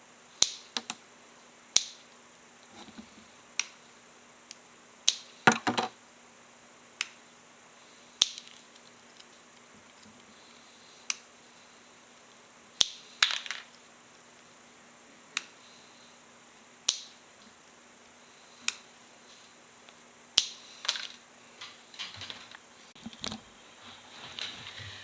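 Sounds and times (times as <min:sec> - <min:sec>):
light plastic clattering: 0:20.9 - 0:23.4.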